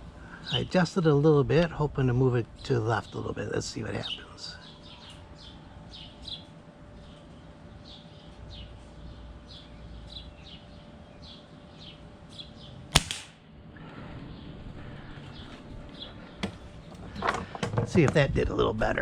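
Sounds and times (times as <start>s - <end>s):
pellet pistol shot: 12.9s - 13.4s.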